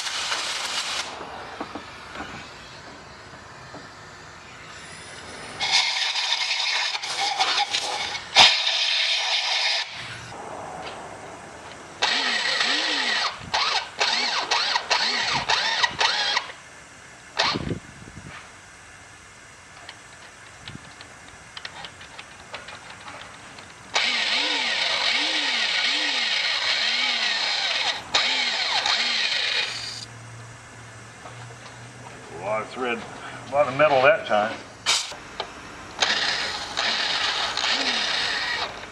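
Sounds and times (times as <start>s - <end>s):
power drill cutting metal: 0.0s - 3.0s, 4.5s - 10.3s, 12.0s - 16.6s, 17.4s - 17.6s, 23.9s - 30.1s, 34.9s - 35.2s, 36.0s - 38.9s.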